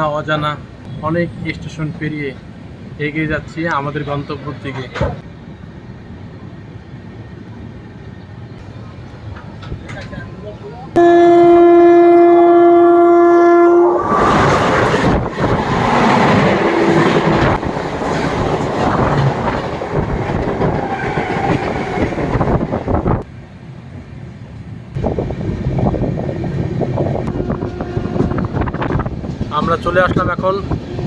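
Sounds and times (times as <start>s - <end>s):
train rushing over rails: 0.2s - 31.0s
train horn blast: 11.0s - 14.1s, 27.2s - 29.0s, 30.8s - 31.0s.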